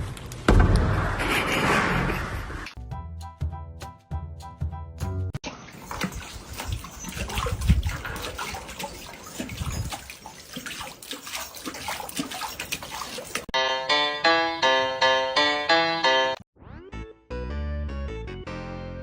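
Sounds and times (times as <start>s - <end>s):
water splashing and sloshing: 5.3s - 13.6s.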